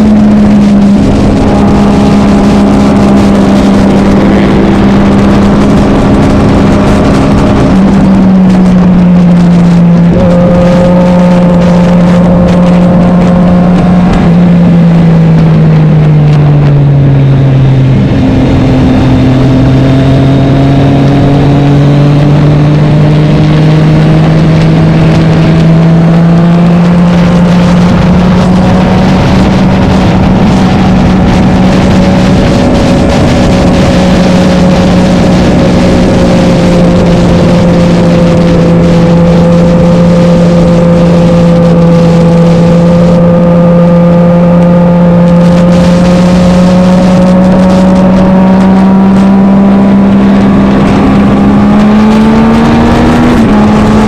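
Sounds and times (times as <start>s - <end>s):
motorcycle engine revving: 0.0s - 54.0s.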